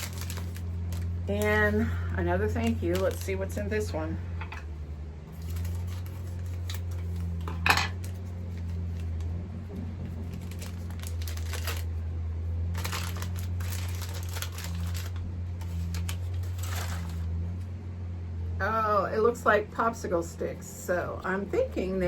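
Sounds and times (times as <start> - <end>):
wrapping paper rustling: 0.0 - 3.9, 5.3 - 17.6.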